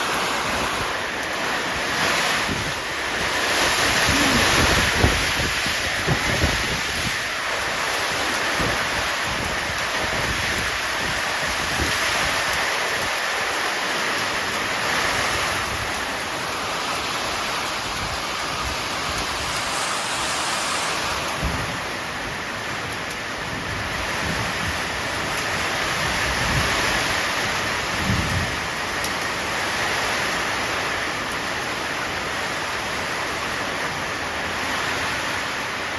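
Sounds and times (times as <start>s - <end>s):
strong wind gusting: 0.0s - 7.8s, 15.0s - 25.1s
wind buffeting microphone: 1.9s - 7.3s, 17.0s - 27.0s.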